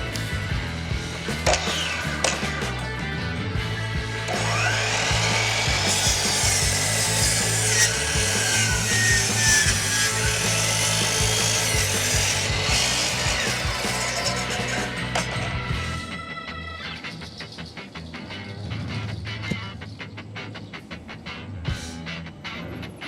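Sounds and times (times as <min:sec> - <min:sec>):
background music: 0:00.0 - 0:23.0
miter saw cutting wood: 0:00.9 - 0:02.9, 0:03.7 - 0:16.1.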